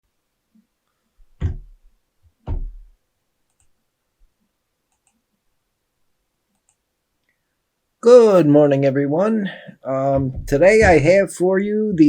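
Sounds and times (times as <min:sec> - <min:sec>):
heavy thumps with low ring: 0:10.1 - 0:11.2.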